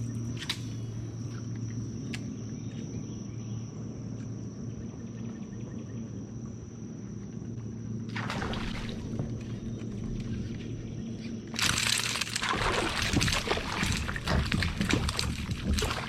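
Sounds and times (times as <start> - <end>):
insects droning: 0.0 - 16.0
low steady hum: 0.0 - 16.0.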